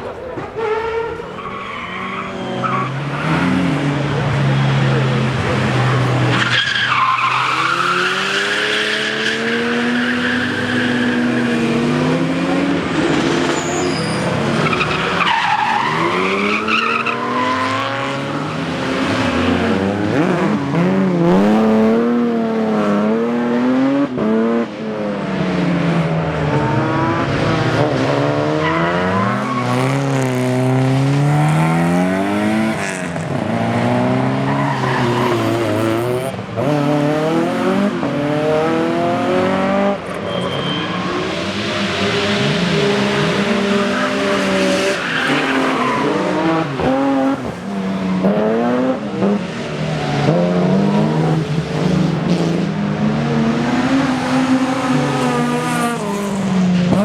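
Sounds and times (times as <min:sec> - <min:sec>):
rally car engine revving: 0:00.0 - 0:57.0
tyre squeal: 0:00.4 - 0:03.3, 0:13.5 - 0:17.7, 0:34.5 - 0:35.8, 0:40.1 - 0:47.0.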